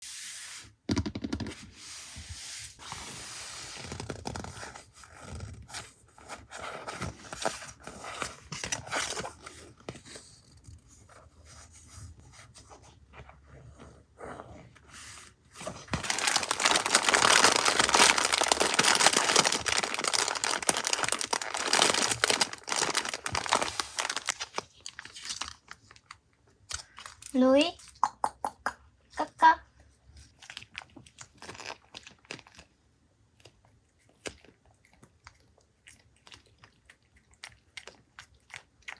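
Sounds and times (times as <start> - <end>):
packaging taps and rustles: 15.6 - 27.3
packaging crinkling and tearing: 15.6 - 27.4, 30.4 - 32.7.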